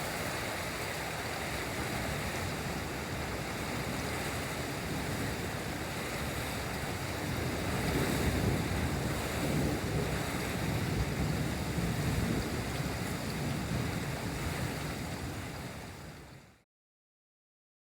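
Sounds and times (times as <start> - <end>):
rain falling steadily: 0.0 - 16.6
low rolling thunder: 6.8 - 14.4.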